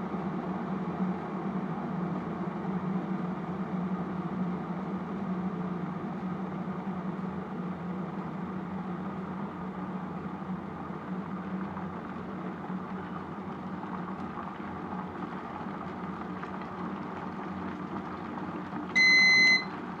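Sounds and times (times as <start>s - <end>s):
low machine hum: 6.9s - 20.0s
high electronic beep: 19.0s - 19.7s.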